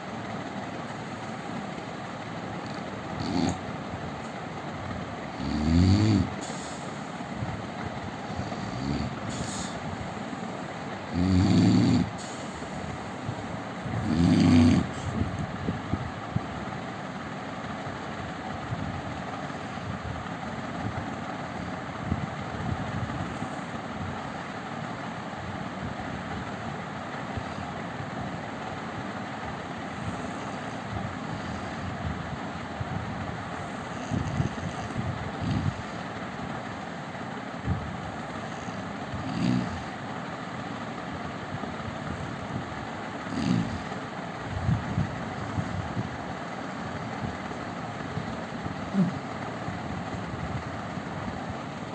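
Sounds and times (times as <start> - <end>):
steady background noise: 0.0 - 51.9
man snoring: 2.6 - 3.6, 5.3 - 6.9, 8.2 - 9.8, 11.1 - 12.8, 13.8 - 15.3, 33.9 - 35.7, 38.5 - 40.0, 43.3 - 44.0, 48.8 - 49.3.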